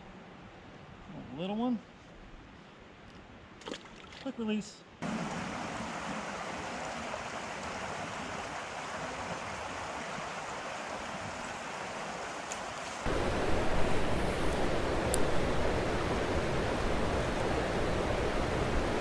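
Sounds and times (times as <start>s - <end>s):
creek water running: 5.0s - 19.0s
deep rushing water: 5.0s - 19.0s.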